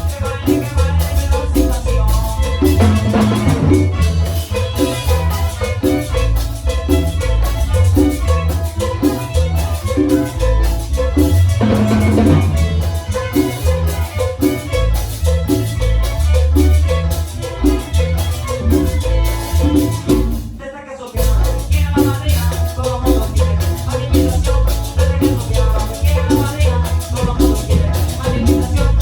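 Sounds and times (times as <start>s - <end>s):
live band playing cumbia: 0.0s - 29.0s
strong bass: 0.0s - 29.0s
violins: 2.3s - 20.5s.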